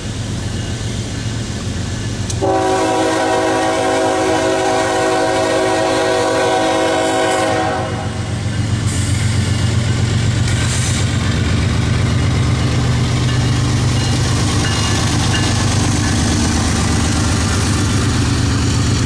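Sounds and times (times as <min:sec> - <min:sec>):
locomotive air horn blast: 0:02.4 - 0:08.3.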